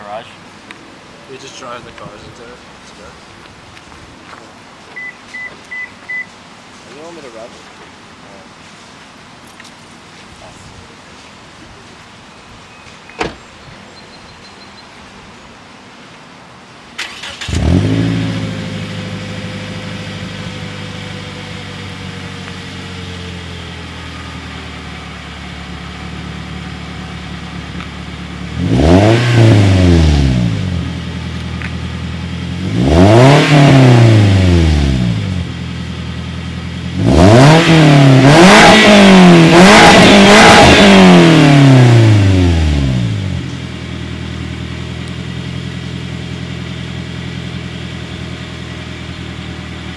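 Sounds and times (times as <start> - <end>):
car engine starting and idling: 16.9 - 49.9
car engine revving: 17.0 - 49.9.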